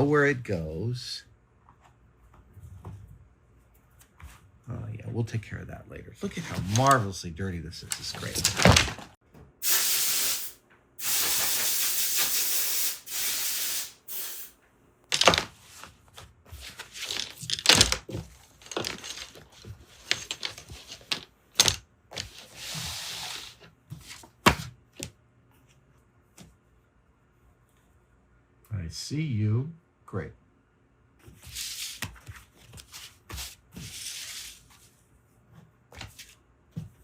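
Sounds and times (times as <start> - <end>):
hissing bursts: 9.6 - 14.5.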